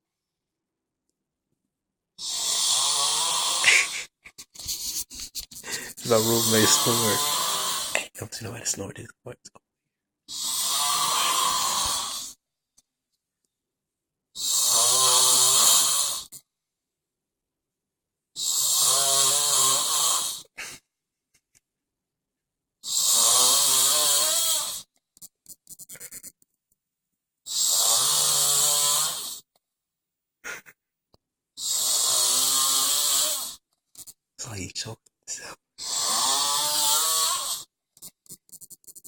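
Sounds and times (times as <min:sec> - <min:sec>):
man snoring: 0:02.2 - 0:04.3, 0:05.6 - 0:08.0, 0:10.3 - 0:12.4, 0:14.4 - 0:16.4, 0:18.4 - 0:20.8, 0:22.8 - 0:24.9, 0:27.5 - 0:29.5, 0:31.6 - 0:33.6, 0:35.4 - 0:37.7.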